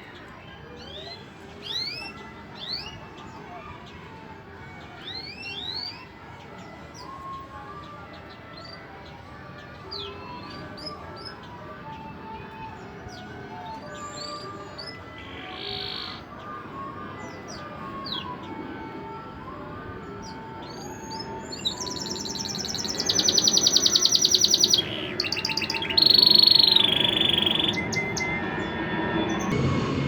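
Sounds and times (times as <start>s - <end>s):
canary singing: 0.8s - 3.0s, 5.0s - 6.0s, 13.1s - 16.5s, 17.2s - 18.5s, 20.2s - 29.6s.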